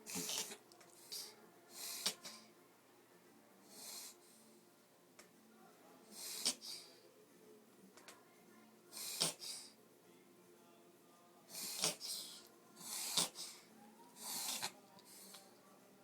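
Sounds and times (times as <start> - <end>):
dog reverse sneezing: 0.0 - 0.6, 6.2 - 6.9, 9.0 - 9.7, 11.5 - 13.6.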